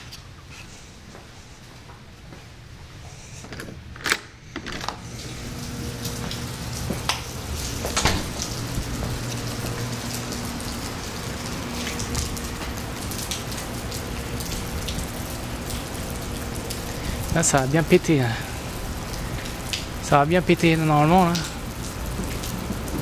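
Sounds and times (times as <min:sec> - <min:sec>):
rain pouring: 0:05.0 - 0:23.0.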